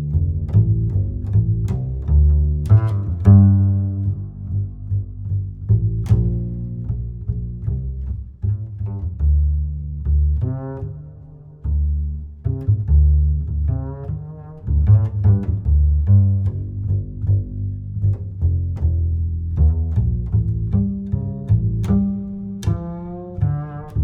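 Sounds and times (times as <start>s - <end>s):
plucked bass line music: 0.0s - 24.0s.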